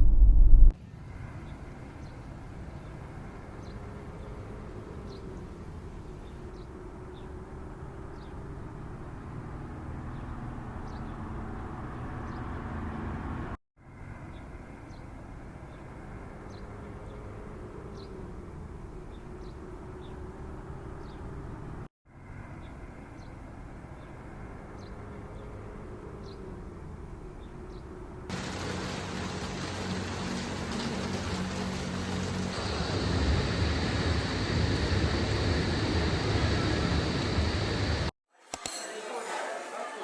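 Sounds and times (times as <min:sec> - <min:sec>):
low rumble and hiss: 0:00.0 - 0:00.7, 0:32.2 - 0:38.1.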